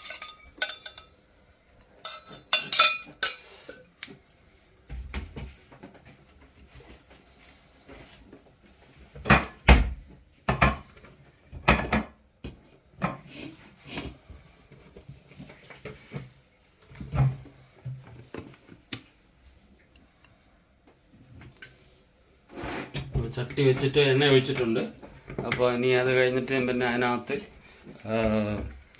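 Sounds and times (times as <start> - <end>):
pan and utensils clattering: 0.0 - 1.2, 1.9 - 4.0.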